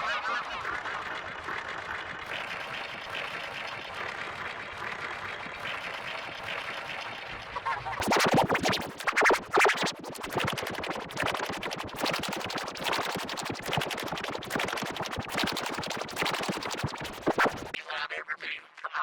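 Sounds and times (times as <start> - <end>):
smeared muffled remix audio: 8.0 - 17.8
stuttering chopped loop: 8.0 - 17.8.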